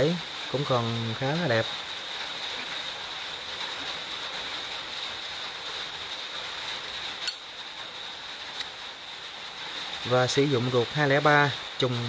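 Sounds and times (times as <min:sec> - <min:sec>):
steady hiss: 0:00.0 - 0:12.0
lighter lid clicking: 0:07.2 - 0:07.4.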